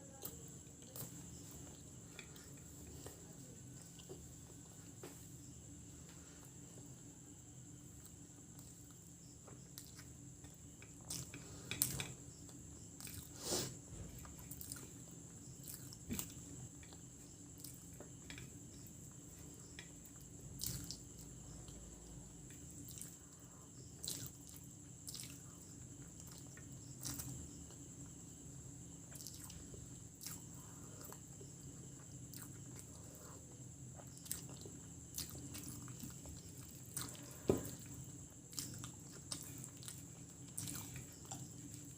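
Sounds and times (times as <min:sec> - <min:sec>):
faint steady hum: 0:00.0 - 0:41.9
person chewing and eating: 0:00.2 - 0:05.0, 0:06.4 - 0:28.2, 0:28.8 - 0:41.9.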